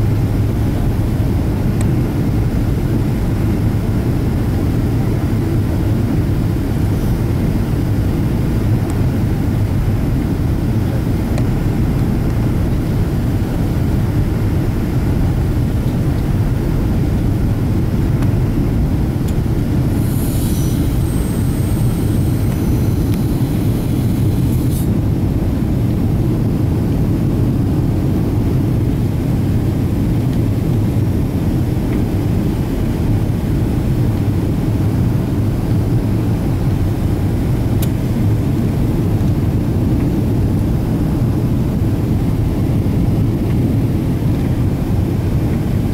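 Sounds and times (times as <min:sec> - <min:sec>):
airplane cabin engine rumble: 0:00.0 - 0:45.9
high hiss with thin whistle: 0:20.0 - 0:23.9.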